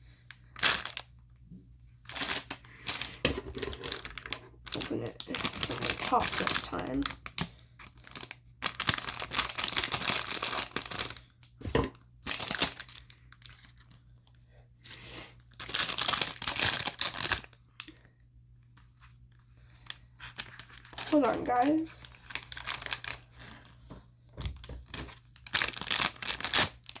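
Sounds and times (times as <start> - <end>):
plastic packaging crinkling and tearing: 0.3 - 1.1, 2.0 - 11.6, 12.2 - 14.0, 15.4 - 18.0, 19.6 - 23.8, 24.4 - 27.0.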